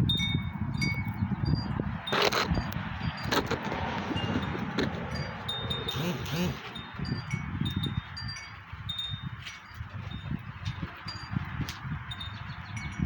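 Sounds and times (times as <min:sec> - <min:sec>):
wind chimes tinkling: 0:00.0 - 0:03.4, 0:04.0 - 0:13.0
wind rumbling on microphone: 0:00.0 - 0:13.0.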